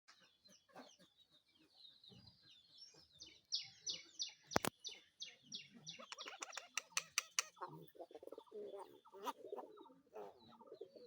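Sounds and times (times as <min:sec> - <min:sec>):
myna chirping and whistling: 0:03.5 - 0:07.6
sharp double click: 0:06.2 - 0:07.6.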